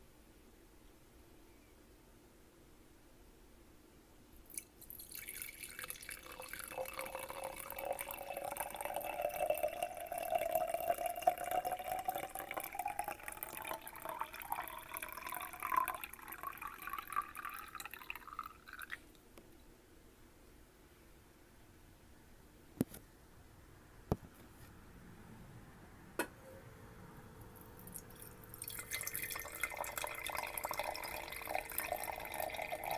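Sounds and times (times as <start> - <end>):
water pouring into a glass: 4.5 - 19.1, 27.5 - 32.9.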